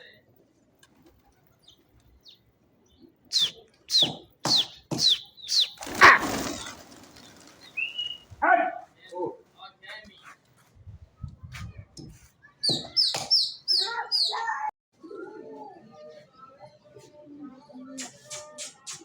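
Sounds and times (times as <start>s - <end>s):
pigeon wings flapping: 4.5s - 8.4s.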